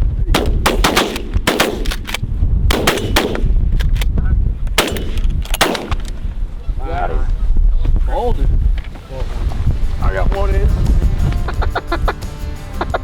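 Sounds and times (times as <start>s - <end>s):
wind rumble on microphone: 0.0s - 13.0s
shotguns firing: 0.3s - 4.0s, 4.7s - 6.3s.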